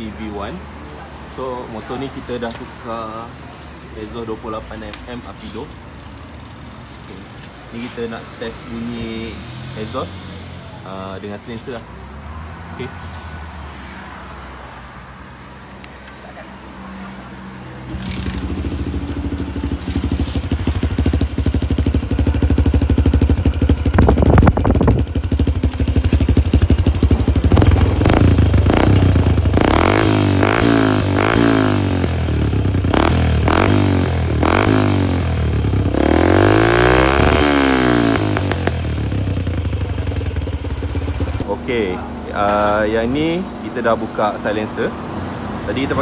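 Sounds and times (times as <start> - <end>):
motorcycle engine revving: 17.8 - 41.5
motorcycle engine idling: 18.1 - 36.6, 37.2 - 41.5.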